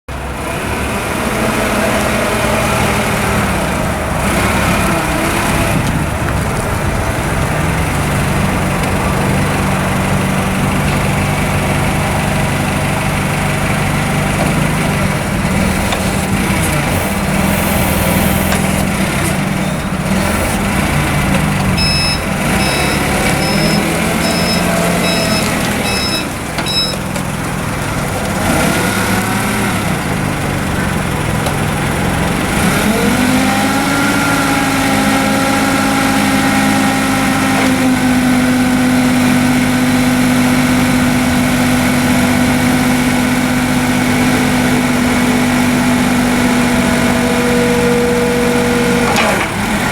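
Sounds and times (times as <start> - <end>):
forklift engine running: 0.1 - 49.9
backup alarm beeps: 21.8 - 27.0.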